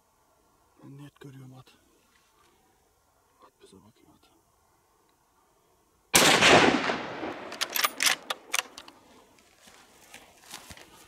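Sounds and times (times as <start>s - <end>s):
gunshot with long echo: 6.2s - 7.6s
sharp clicks: 7.3s - 9.0s.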